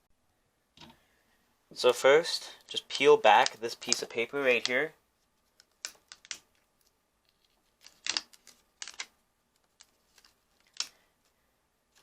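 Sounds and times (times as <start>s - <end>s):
light clicks and crinkles: 2.6s - 12.0s.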